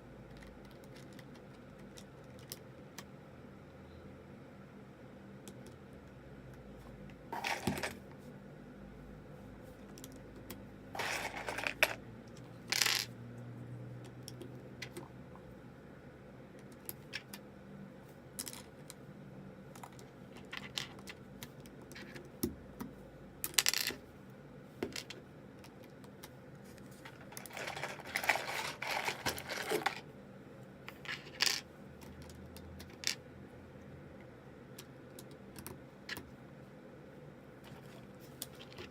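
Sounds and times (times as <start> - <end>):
small hard pieces clattering: 11.0 - 12.0, 27.3 - 30.0.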